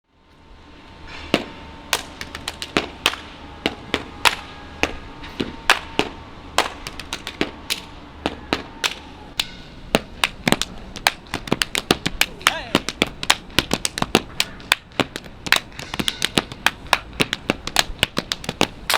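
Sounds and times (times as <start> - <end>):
hand claps: 1.9 - 3.3, 4.2 - 5.0, 5.7 - 5.9, 6.6 - 7.9, 10.2 - 18.9
hands slapping body: 10.2 - 18.9.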